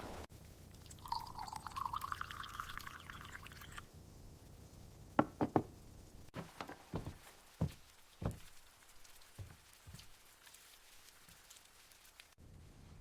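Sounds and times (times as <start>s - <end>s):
liquid pouring into vessel: 0.8s - 3.8s
sharp knocks: 5.2s - 5.7s.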